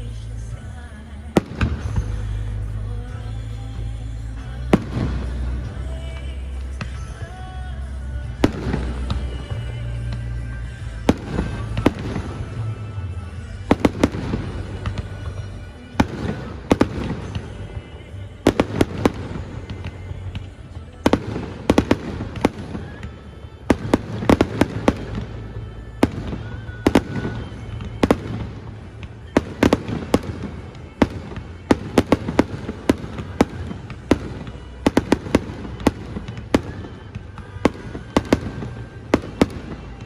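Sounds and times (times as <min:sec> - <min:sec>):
fireworks bangs: 0:01.2 - 0:03.8, 0:04.4 - 0:40.0.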